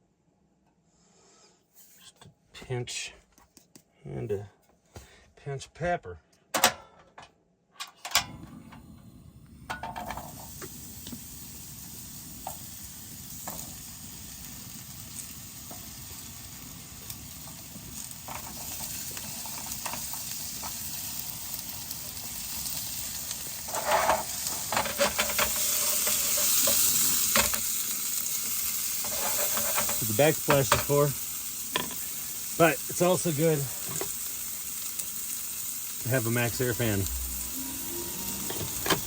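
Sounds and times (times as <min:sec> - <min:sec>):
vegetables sizzling in a frying pan: 0:09.0 - 0:39.0.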